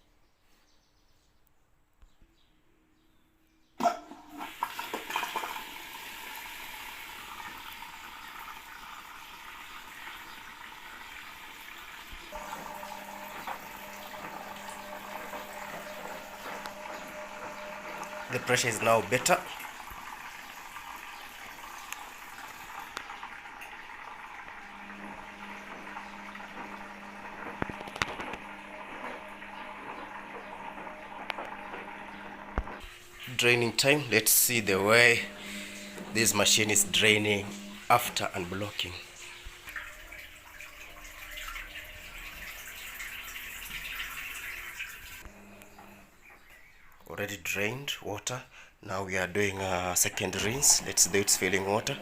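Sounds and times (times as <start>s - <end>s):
water rushing into washing machine: 3.8s - 47.6s, 48.9s - 52.0s
drain pump humming: 3.8s - 52.0s.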